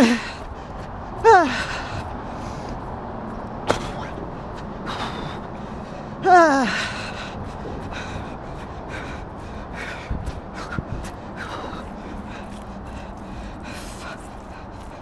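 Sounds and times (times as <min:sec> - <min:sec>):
woman grunting from exertion: 0:00.0 - 0:00.3, 0:01.3 - 0:01.8, 0:06.2 - 0:07.0
movement noise: 0:00.0 - 0:15.0
woman breathing steadily: 0:00.0 - 0:15.0.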